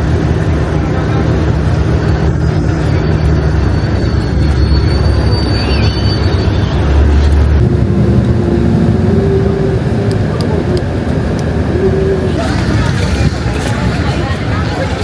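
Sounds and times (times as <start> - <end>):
busy outdoor background: 0.0 - 15.0
vehicle engine and road noise: 0.0 - 15.0
faint tones: 7.6 - 15.0.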